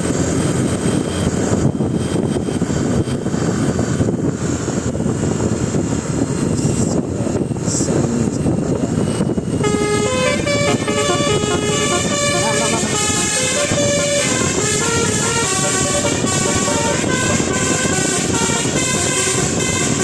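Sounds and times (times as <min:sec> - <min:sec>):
vehicle din: 0:09.5 - 0:20.0
bus musical horn tune: 0:09.6 - 0:20.0.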